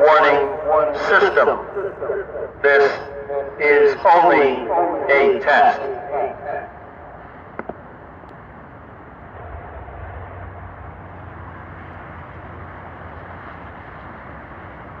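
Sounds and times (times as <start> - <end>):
low engine rumble: 0.0 - 15.0
outdoor background noise: 0.0 - 15.0.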